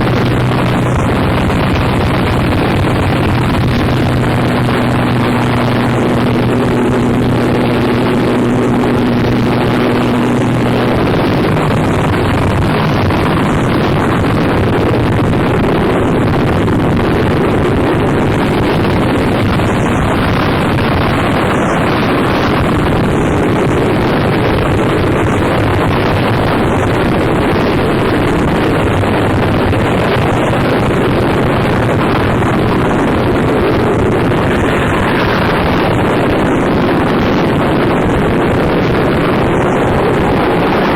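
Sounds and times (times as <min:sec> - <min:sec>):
distorted noise music: 0:00.0 - 0:40.9
low steady hum: 0:00.0 - 0:40.9.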